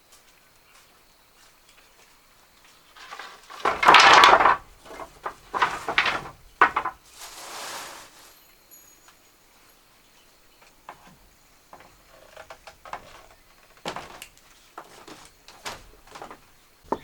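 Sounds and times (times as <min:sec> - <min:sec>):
scraping and rustling: 0:02.8 - 0:08.6, 0:10.9 - 0:17.0
knocks: 0:03.0 - 0:07.0
soft hiss: 0:06.4 - 0:10.4.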